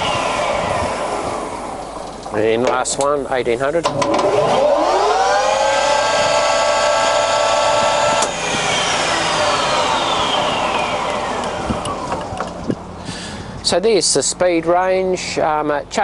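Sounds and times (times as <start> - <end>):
lathe gears whining: 0.0 - 3.0, 3.8 - 13.0.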